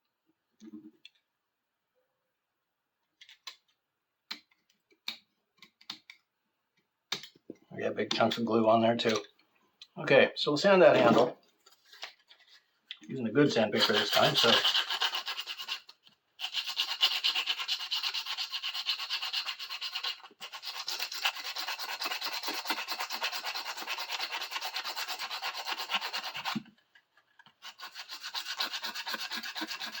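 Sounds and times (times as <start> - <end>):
sandpaper rubbing by hand: 13.6 - 26.6, 27.6 - 30.0.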